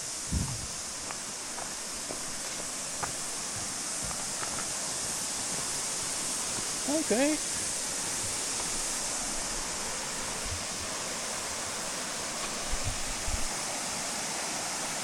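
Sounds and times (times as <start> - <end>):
water rushing in cascade: 0.0 - 15.0
soft low thumps: 0.3 - 0.8.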